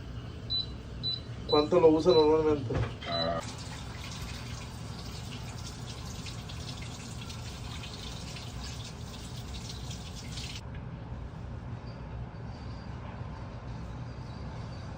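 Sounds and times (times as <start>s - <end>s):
water running from a tap: 3.0s - 10.6s.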